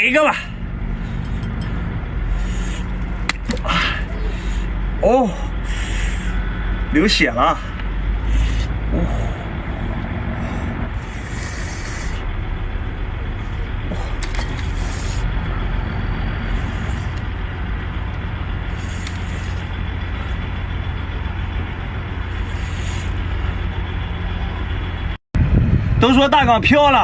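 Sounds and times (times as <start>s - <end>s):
steady low rumble: 0.0s - 27.0s.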